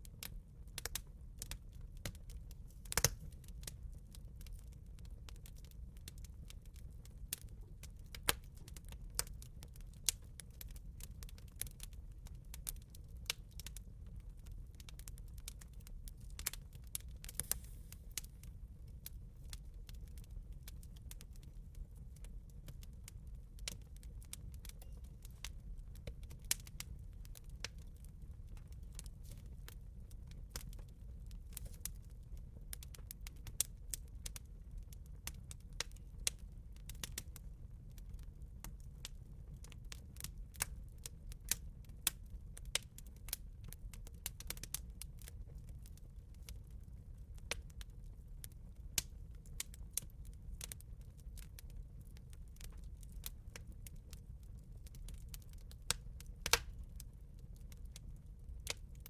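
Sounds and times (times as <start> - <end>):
campfire crackling: 0.1 - 22.9, 23.6 - 34.5, 49.0 - 57.0.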